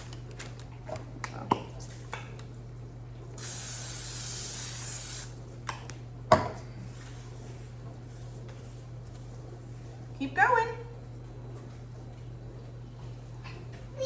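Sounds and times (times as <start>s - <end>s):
aerosol spray hiss: 3.4s - 5.3s.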